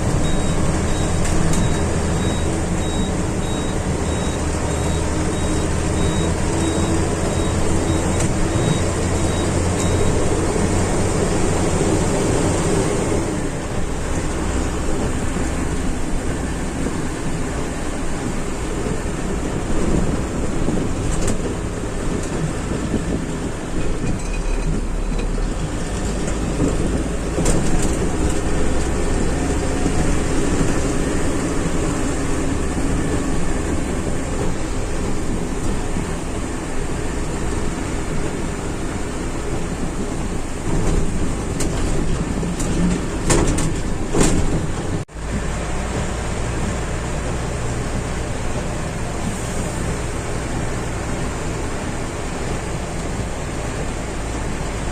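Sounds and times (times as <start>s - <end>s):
heavy vehicle rumble: 0.0s - 54.9s
rain: 0.0s - 54.9s.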